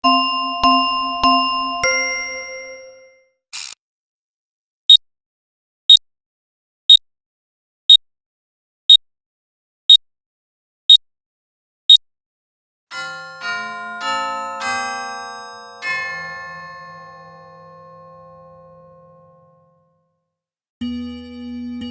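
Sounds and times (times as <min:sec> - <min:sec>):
clock ticking: 0:00.0 - 0:02.8
chiming clock melody: 0:00.0 - 0:03.2, 0:12.9 - 0:19.9, 0:20.8 - 0:21.9.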